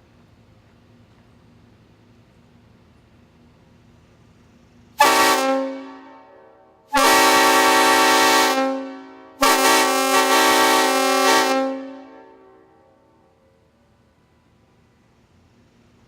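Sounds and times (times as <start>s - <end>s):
train horn blasts: 5.0s - 13.3s.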